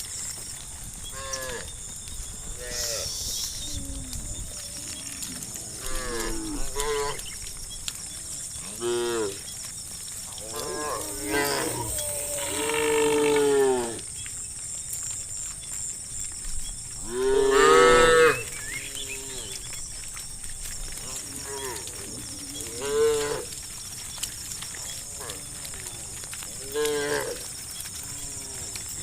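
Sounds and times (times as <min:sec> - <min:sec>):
cows mooing: 0:02.5 - 0:07.3, 0:08.1 - 0:09.5, 0:10.4 - 0:14.1, 0:17.0 - 0:19.7, 0:21.0 - 0:23.7, 0:24.8 - 0:29.0.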